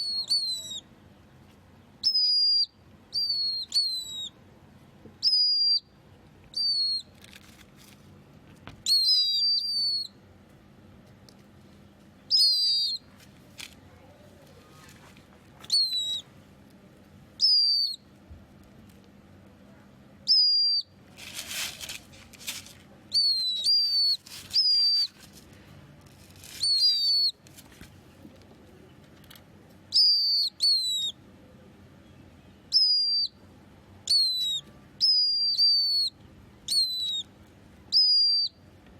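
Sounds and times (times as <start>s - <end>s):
brief rustling: 21.1s - 23.0s, 24.2s - 28.1s
bird whistling high notes: 26.6s - 27.3s.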